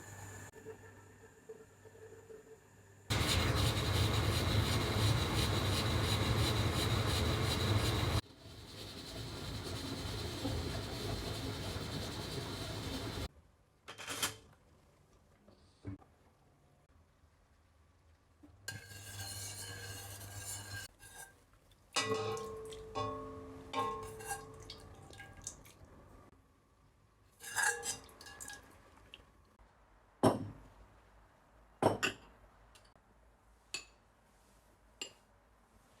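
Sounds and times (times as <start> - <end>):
tableware clinking: 22.0 - 24.6.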